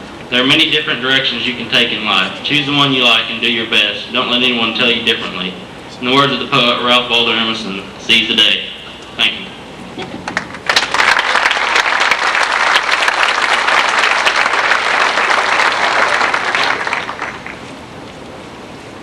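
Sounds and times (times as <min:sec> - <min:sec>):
audience applauding: 0:10.2 - 0:17.6.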